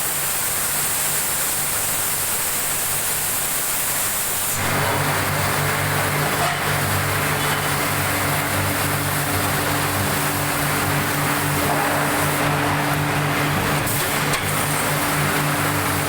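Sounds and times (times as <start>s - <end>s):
heavy machinery humming: 4.5s - 16.0s.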